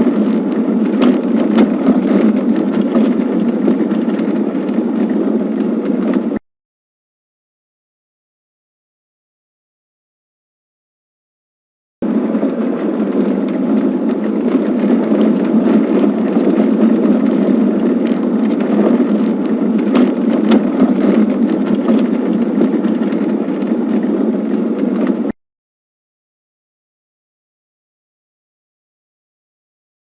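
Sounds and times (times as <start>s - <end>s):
rattles and clicks: 0.0s - 6.4s, 12.0s - 25.3s
vehicle driving rumble: 0.0s - 6.4s, 12.0s - 25.3s.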